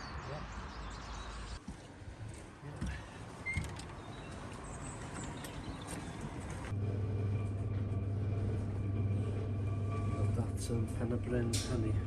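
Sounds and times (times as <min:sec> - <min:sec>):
low electrical hum: 0:06.7 - 0:12.0.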